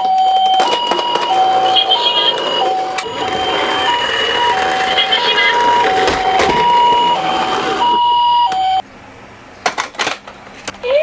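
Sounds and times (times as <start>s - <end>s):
toy electronic two-tone siren: 0.0s - 8.8s
wailing siren rising in pitch: 0.0s - 8.8s.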